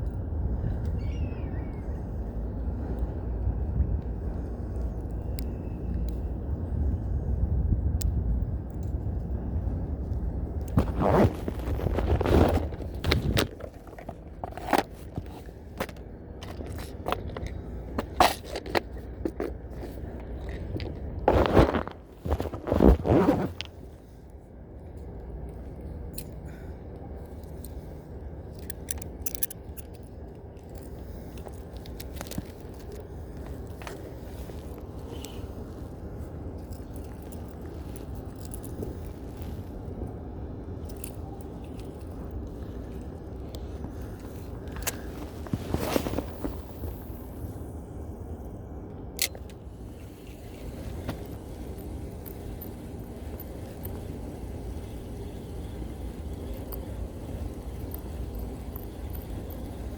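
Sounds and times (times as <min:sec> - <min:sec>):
low wind rumble: 0:00.0 - 0:59.9
scraping and rustling: 0:10.8 - 0:23.8.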